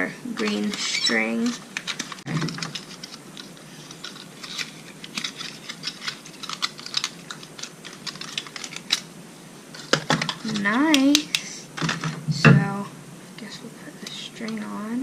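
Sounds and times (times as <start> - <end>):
yo-yo and plastic packaging clicks: 1.5 - 9.1.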